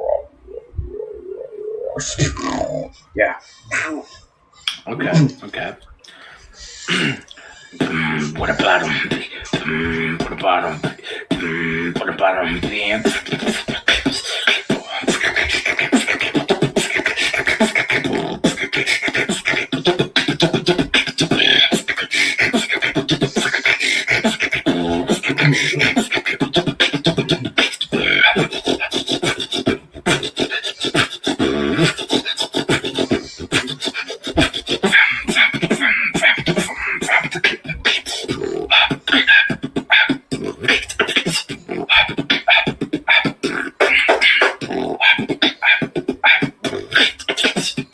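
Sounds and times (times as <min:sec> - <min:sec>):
person beatboxing: 0:04.7 - 0:47.9.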